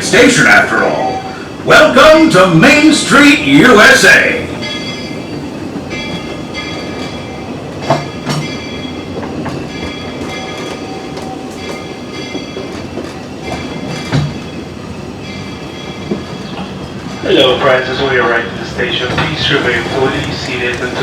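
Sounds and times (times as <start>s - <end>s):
train cars rumbling on track: 0.0s - 21.0s
wheel clacks over rails: 18.8s - 21.0s.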